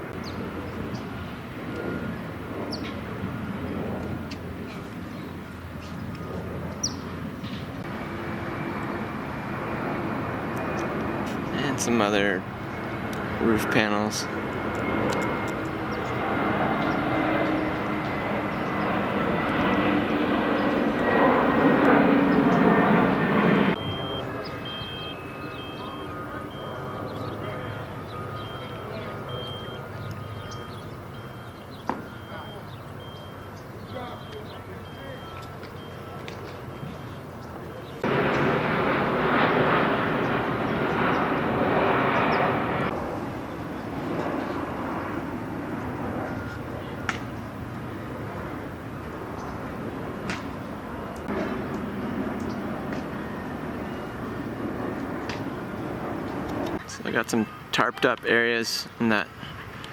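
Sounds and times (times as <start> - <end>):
airplane engine rumble: 0.0 - 59.9
short high beep: 23.8 - 26.8.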